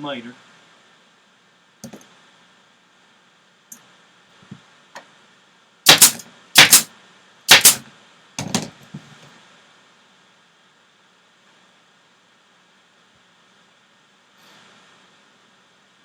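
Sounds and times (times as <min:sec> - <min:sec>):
staple gun firing: 0:05.9 - 0:06.9, 0:07.5 - 0:07.8.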